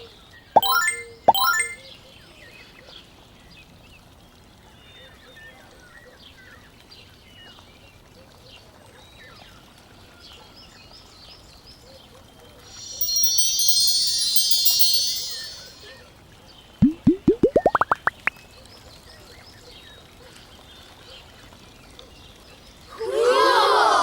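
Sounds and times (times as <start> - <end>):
high chime tones: 0.6 - 1.8, 12.8 - 15.9, 16.8 - 18.3.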